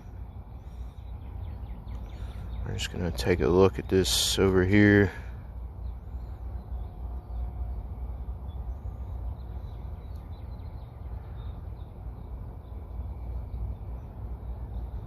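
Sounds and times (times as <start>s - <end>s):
faint bird chirps: 0.0s - 15.0s.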